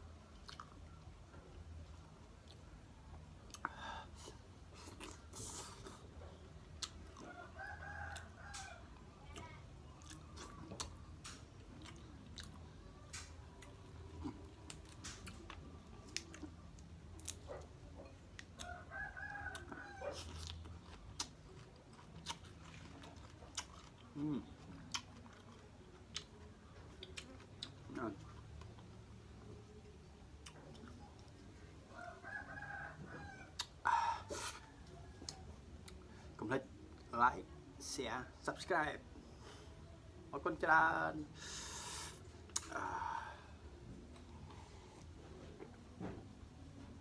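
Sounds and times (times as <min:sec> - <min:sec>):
rooster crowing: 0:07.2 - 0:08.9, 0:18.6 - 0:20.2, 0:31.9 - 0:35.2.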